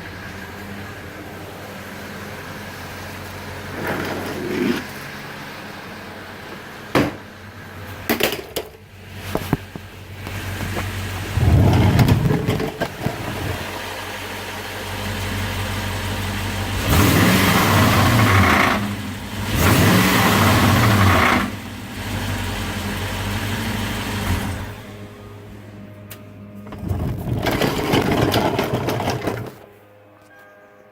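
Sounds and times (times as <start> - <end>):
car engine idling and revving: 0.0 - 29.6
muffler rattle: 8.0 - 13.8, 26.6 - 29.6.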